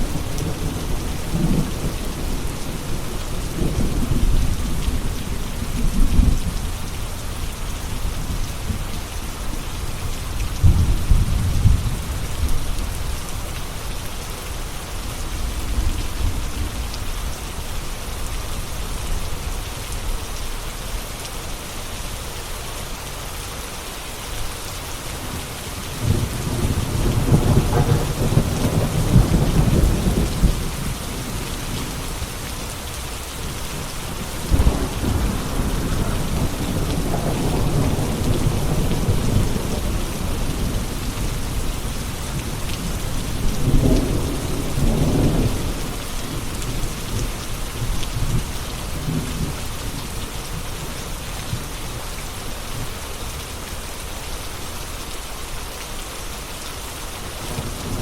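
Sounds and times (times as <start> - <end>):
steady rain falling: 0.0 - 58.0
thunder rumbling: 25.2 - 32.2, 34.0 - 50.9.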